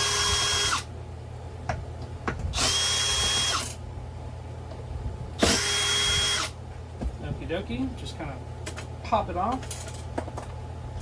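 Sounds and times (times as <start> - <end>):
electric screwdriver whirring: 2.6 - 3.8, 5.4 - 6.6.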